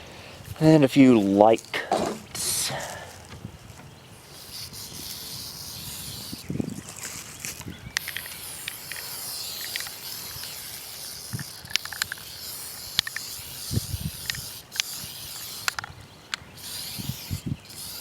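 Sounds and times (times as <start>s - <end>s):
aerosol spray can hissing: 4.3s - 6.4s, 8.0s - 15.8s, 16.6s - 18.0s.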